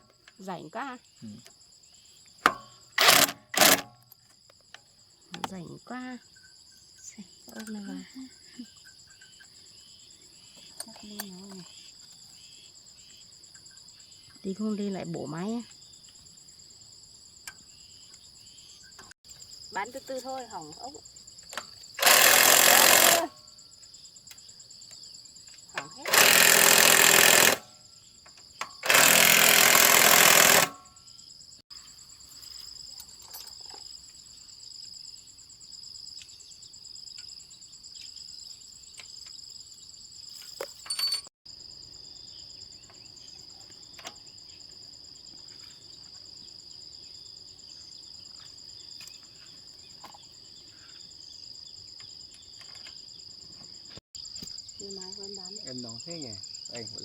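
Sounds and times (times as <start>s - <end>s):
insects chirring: 0.0s - 57.0s
power tool rattling: 2.5s - 4.0s, 22.0s - 23.4s, 25.8s - 27.7s, 28.6s - 30.8s.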